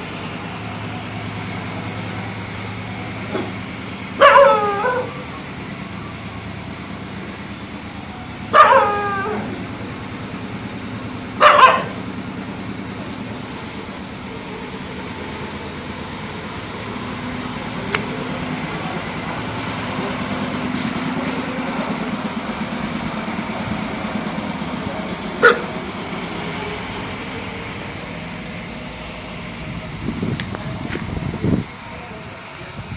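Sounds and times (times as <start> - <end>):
dog barking: 4.2 - 5.1, 8.5 - 9.5, 11.4 - 12.0, 25.4 - 25.8.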